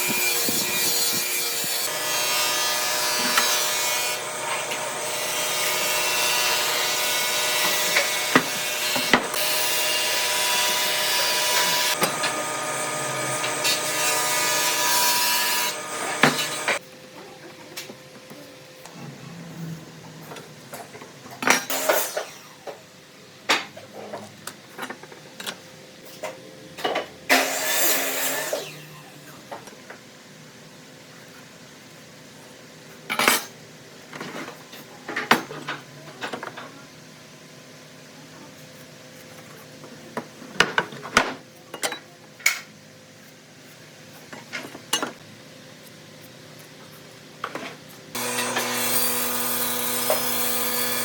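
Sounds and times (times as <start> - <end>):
power tool cutting wood: 0.0 - 16.8, 27.3 - 29.2, 48.1 - 51.0.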